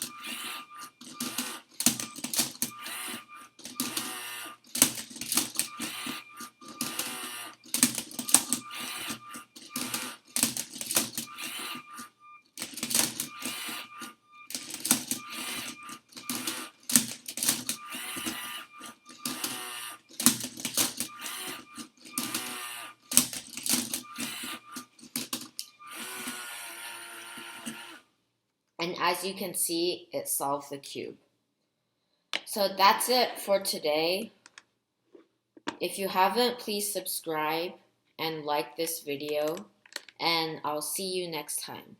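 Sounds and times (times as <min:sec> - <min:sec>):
plastic cube clicking and clacking: 0:00.0 - 0:11.8, 0:12.6 - 0:13.9, 0:14.5 - 0:26.4, 0:39.4 - 0:40.2
motor whine bursts: 0:00.0 - 0:16.9, 0:17.6 - 0:23.2, 0:23.8 - 0:28.0.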